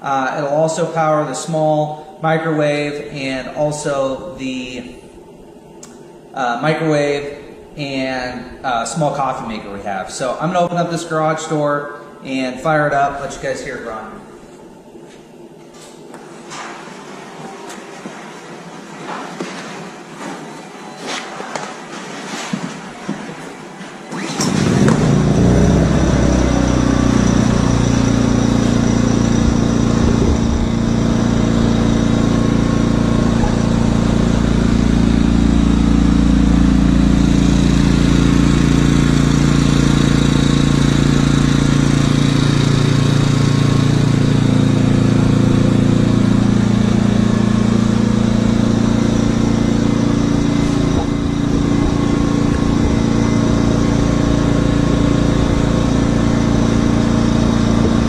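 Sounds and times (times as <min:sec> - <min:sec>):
generator running: 0:22.9 - 0:58.0.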